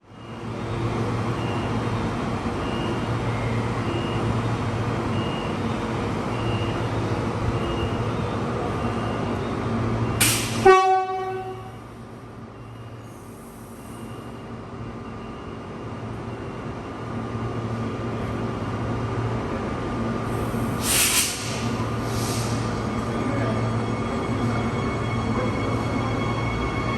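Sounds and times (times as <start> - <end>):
train horn blast: 10.5 - 11.8
electric train humming: 16.0 - 26.9
hiss of air: 20.3 - 22.8.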